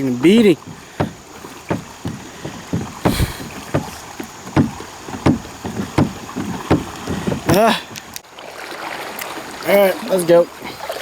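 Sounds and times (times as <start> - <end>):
pedal fins knocking on riverbed: 0.0 - 8.2.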